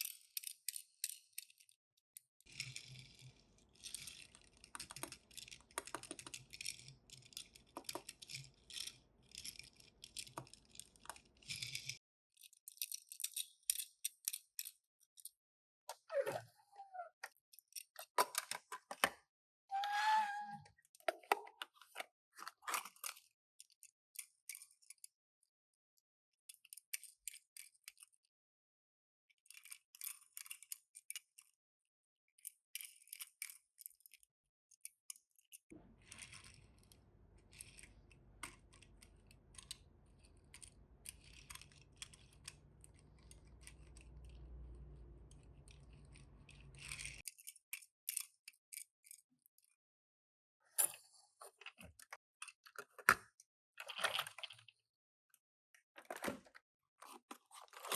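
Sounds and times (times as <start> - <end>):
toy cars and packaging rustling: 0.0 - 15.4, 20.9 - 25.1, 29.4 - 31.6, 32.4 - 49.8, 50.7 - 54.8, 56.0 - 57.9.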